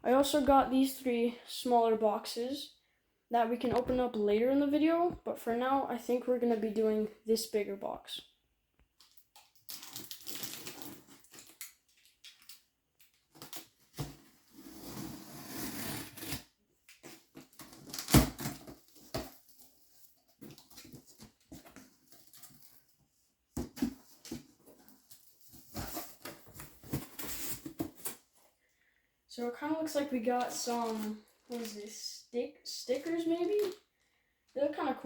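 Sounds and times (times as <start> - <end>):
packaging rustling: 9.5 - 14.3, 30.5 - 32.0
tape and cardboard tearing: 13.3 - 19.6.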